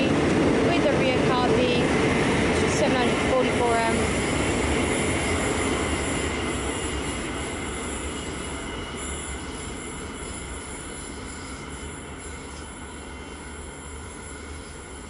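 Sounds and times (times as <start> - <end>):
electric train rumbling past: 0.0 - 15.0
high squeal from train wheels: 3.3 - 15.0.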